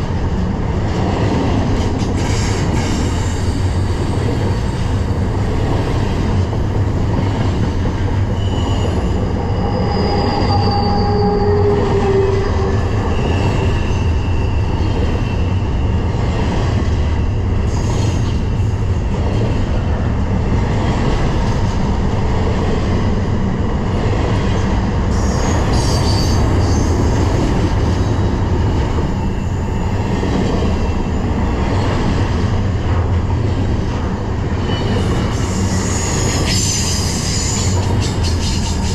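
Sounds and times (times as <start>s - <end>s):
freight train rumbling on rails: 0.0s - 38.9s
high-pitched wheel squeals: 8.3s - 15.7s.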